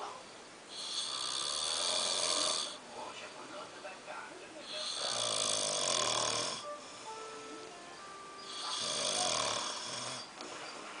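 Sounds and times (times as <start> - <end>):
person snoring: 0.7 - 2.8, 4.6 - 7.2, 8.4 - 10.3.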